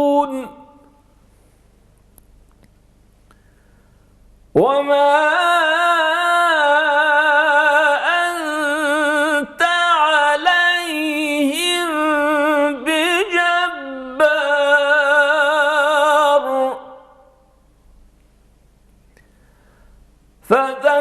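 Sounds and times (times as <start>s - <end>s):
man reciting melodically: 0.0s - 1.1s, 4.5s - 17.4s, 20.4s - 21.0s.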